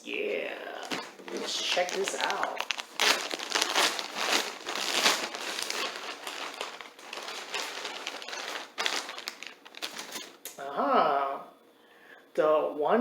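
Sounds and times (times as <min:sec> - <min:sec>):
gift wrap tearing and crinkling: 0:00.8 - 0:10.4.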